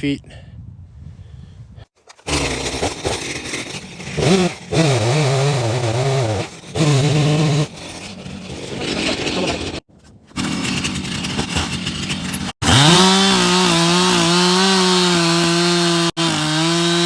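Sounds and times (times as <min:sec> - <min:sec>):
chainsaw running at high revs: 0:02.3 - 0:08.0, 0:10.4 - 0:17.0.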